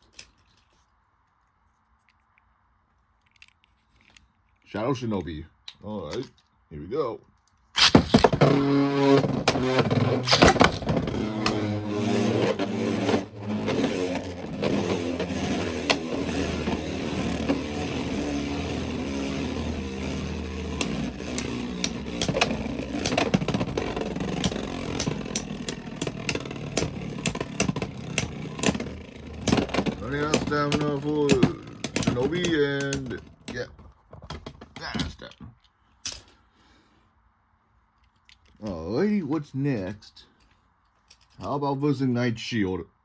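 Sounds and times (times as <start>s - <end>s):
spinning tops whirring: 7.8s - 33.6s.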